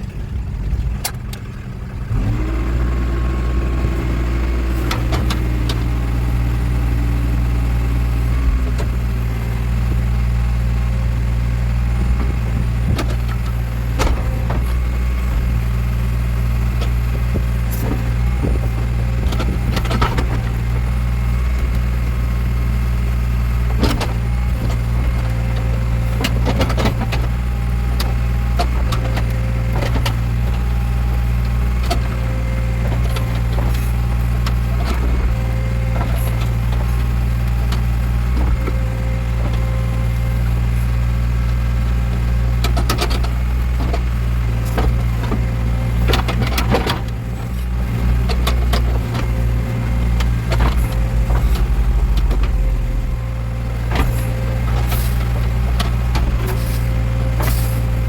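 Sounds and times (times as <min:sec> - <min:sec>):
diesel engine running: 0:00.0 - 0:58.0
machine knocks and clanks: 0:16.7 - 0:20.7, 0:44.6 - 0:56.6.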